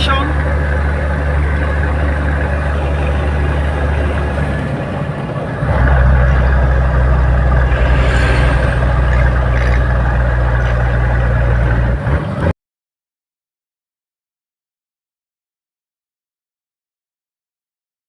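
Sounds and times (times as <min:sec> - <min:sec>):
vehicle engine running: 0:00.0 - 0:12.5.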